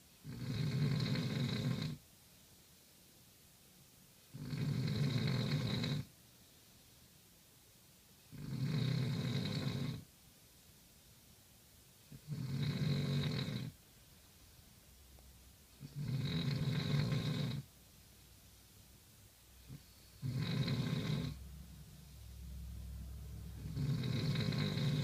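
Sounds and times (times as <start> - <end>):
person snoring: 12.2 - 13.7, 15.9 - 17.7, 19.7 - 21.4, 23.6 - 25.0.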